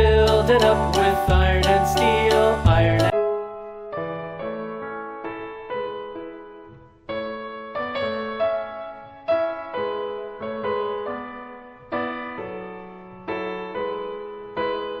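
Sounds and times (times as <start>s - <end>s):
gentle piano chords: 0.0s - 15.0s.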